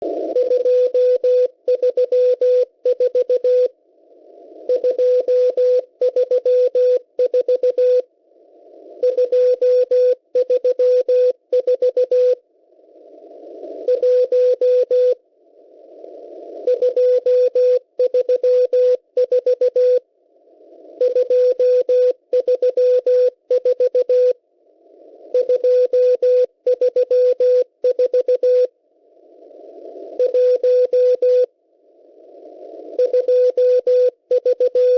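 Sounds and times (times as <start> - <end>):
morse code beeps: 0.4 - 3.7, 4.7 - 8.1, 9.0 - 12.4, 13.8 - 15.2, 16.7 - 20.0, 21.0 - 24.4, 25.3 - 28.7, 30.2 - 31.5, 33.0 - 34.9.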